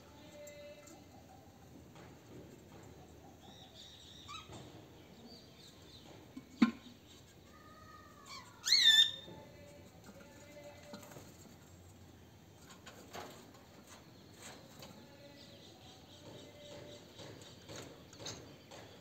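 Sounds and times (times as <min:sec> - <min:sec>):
parrots calling: 0:07.6 - 0:09.3.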